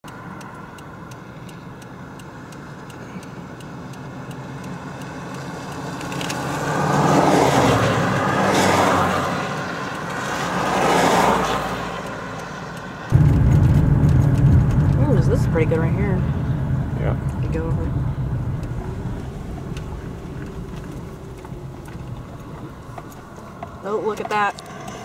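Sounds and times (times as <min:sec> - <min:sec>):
road and wind noise: 0:00.0 - 0:25.0
vehicle engine humming: 0:00.0 - 0:25.0.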